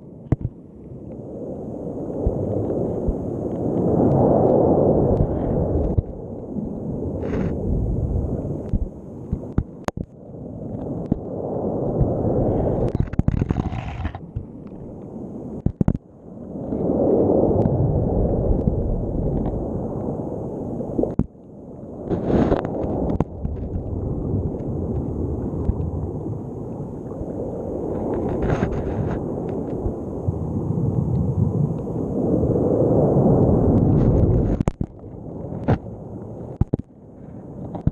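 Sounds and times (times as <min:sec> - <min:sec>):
muffled underwater sea rumble: 0:00.0 - 0:37.9
camera knocking on seabed: 0:00.2 - 0:00.6, 0:05.2 - 0:06.2, 0:08.6 - 0:10.1, 0:12.8 - 0:14.8, 0:15.6 - 0:16.0, 0:22.1 - 0:23.8, 0:33.8 - 0:35.0, 0:35.6 - 0:35.9, 0:36.5 - 0:36.9, 0:37.7 - 0:37.9.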